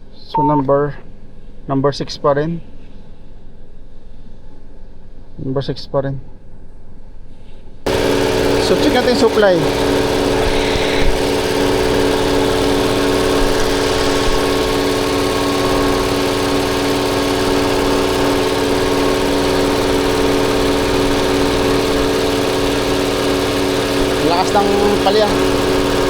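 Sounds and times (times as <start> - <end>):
car engine idling with misfire: 7.9 - 26.0.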